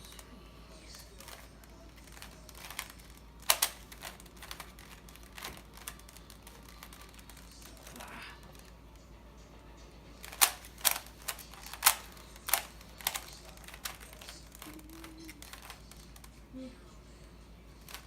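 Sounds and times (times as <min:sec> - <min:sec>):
puzzle cube layers clicking: 0:01.2 - 0:07.9, 0:10.2 - 0:16.3.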